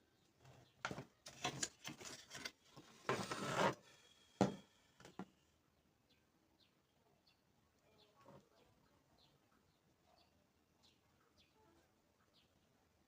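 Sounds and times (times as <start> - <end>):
rubbing and scraping strokes: 1.3 - 4.0.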